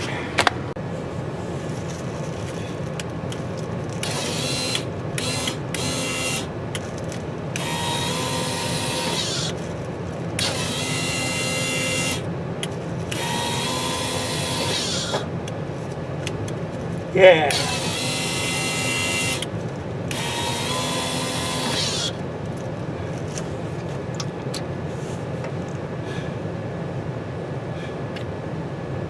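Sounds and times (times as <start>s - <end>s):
steady low hum: 0.0s - 29.0s
small electric motor whining: 3.9s - 6.5s, 7.5s - 9.7s, 10.4s - 12.3s, 13.1s - 15.3s, 17.5s - 19.5s, 20.1s - 22.2s.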